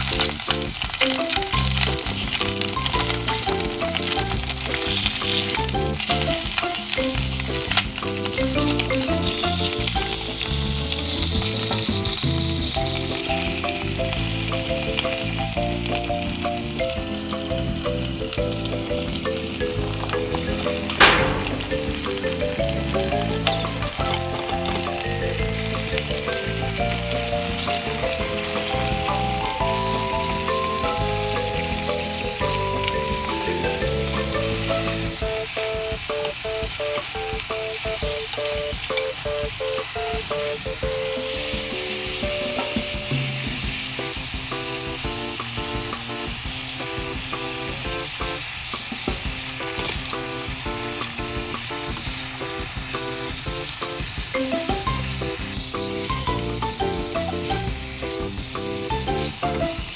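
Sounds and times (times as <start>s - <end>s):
food sizzling in oil: 0.0s - 59.9s
sharp knock: 21.0s - 22.3s.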